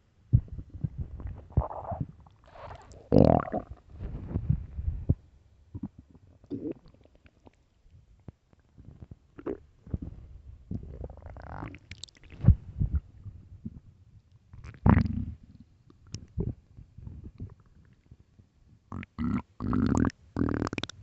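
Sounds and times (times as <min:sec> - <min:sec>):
stomach growling and gurgling: 0:00.3 - 0:04.6, 0:05.8 - 0:07.6, 0:08.6 - 0:13.8, 0:14.6 - 0:18.2, 0:18.9 - 0:21.0.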